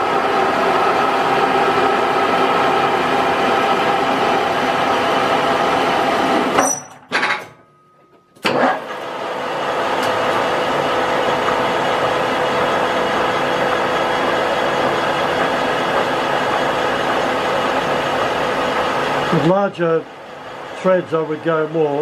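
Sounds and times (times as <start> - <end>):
metal lathe gear whir: 9.0 - 22.0.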